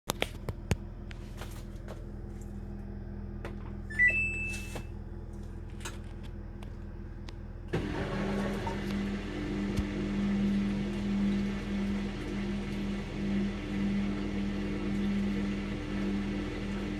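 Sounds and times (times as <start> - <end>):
washing machine humming: 0.1 - 16.9
water rushing in washing machine: 3.4 - 16.9
rising beep tune: 3.9 - 4.8.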